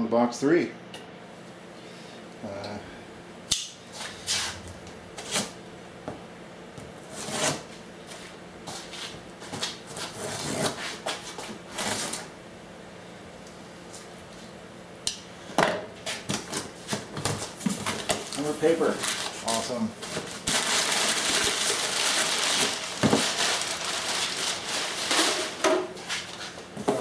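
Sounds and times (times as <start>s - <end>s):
packing paper rustling: 16.4s - 27.0s.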